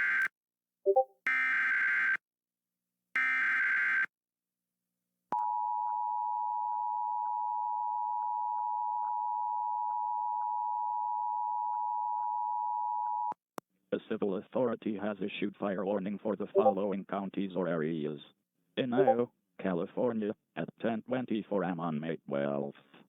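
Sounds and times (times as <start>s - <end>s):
two-tone alert signal: 0.9s - 1.1s, 16.6s - 16.8s, 19.0s - 19.2s.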